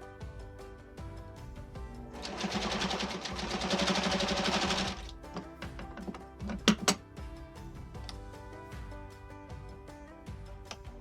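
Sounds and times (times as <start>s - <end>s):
sewing machine stitching: 2.2s - 5.2s.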